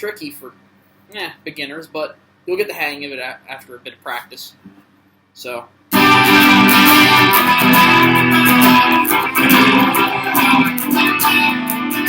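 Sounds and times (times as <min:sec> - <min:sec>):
guitar strumming chords: 0:05.9 - 0:12.0.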